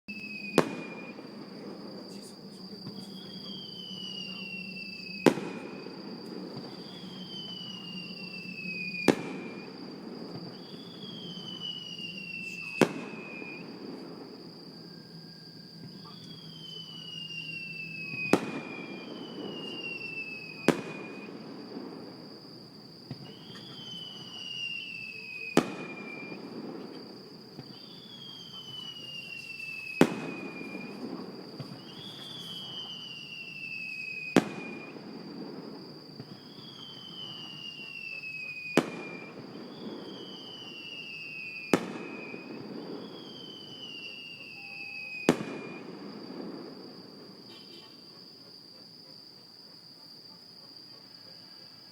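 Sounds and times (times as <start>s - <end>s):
falling firework whistles: 0.1s - 51.9s
firework shells bursting: 15.8s - 48.0s.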